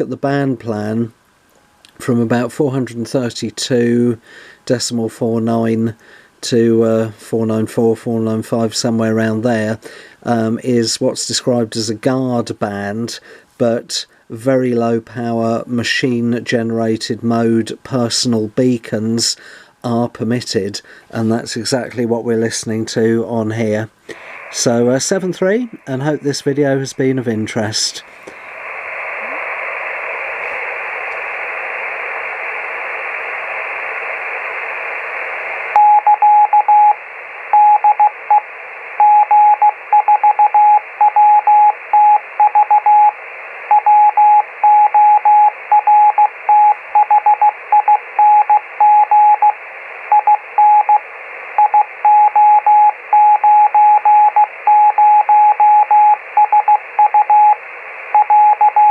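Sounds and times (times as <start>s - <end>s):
radio receiver hiss: 0.0s - 58.9s
morse code tone: 35.8s - 38.4s, 39.0s - 51.0s, 51.6s - 58.9s.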